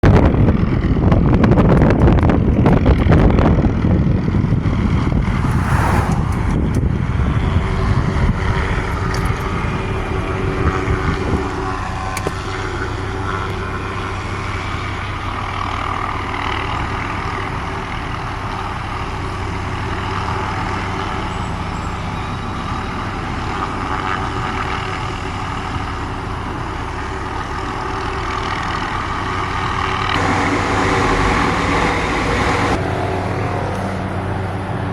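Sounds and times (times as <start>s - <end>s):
helicopter rotor and turbine: 0.1s - 34.9s.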